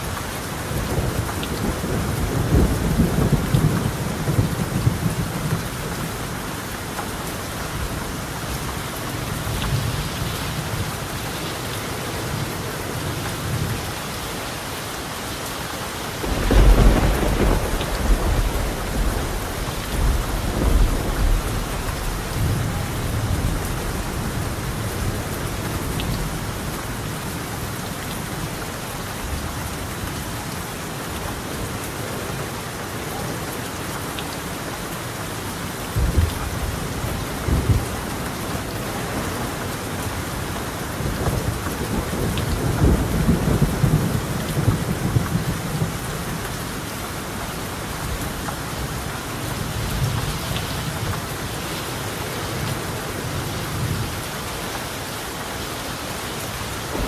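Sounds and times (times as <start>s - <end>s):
heavy rain on a tiled roof: 0.0s - 57.0s
thunder rumbling: 16.2s - 26.4s, 36.0s - 46.4s, 56.8s - 57.0s.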